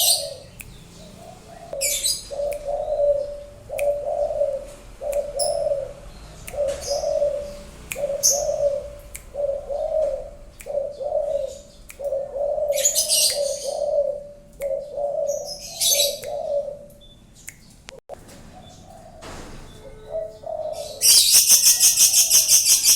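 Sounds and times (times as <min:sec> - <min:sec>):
dove cooing: 0:00.0 - 0:17.0, 0:18.6 - 0:22.9
small birds twittering: 0:00.0 - 0:22.9.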